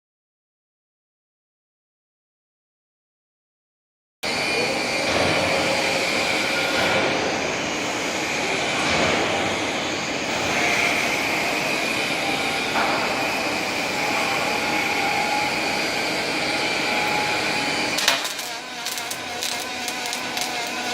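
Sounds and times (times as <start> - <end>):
welding hiss: 5.4 - 20.9.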